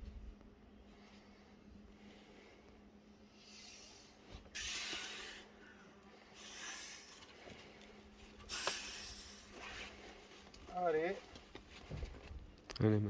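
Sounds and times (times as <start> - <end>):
forceful hissing exhalations: 3.4 - 5.7, 6.3 - 7.4, 8.4 - 10.0.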